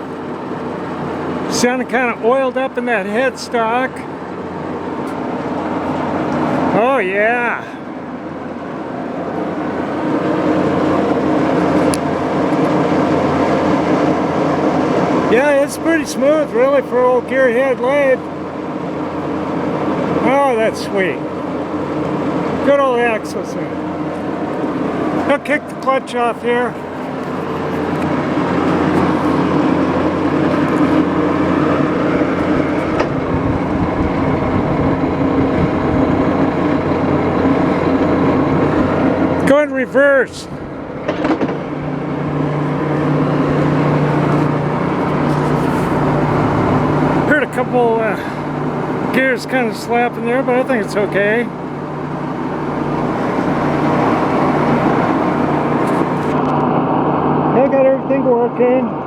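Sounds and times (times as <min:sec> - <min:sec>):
metal lathe gears running: 0:00.0 - 0:39.7, 0:40.7 - 0:57.2
small click: 0:11.8 - 0:12.7.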